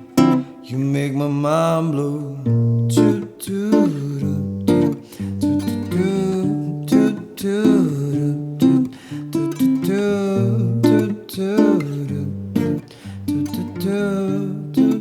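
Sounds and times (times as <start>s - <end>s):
acoustic guitar strummed: 0.0s - 15.0s.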